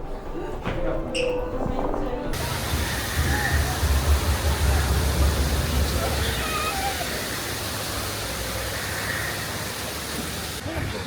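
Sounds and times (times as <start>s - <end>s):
falling water rushing: 2.4s - 10.7s.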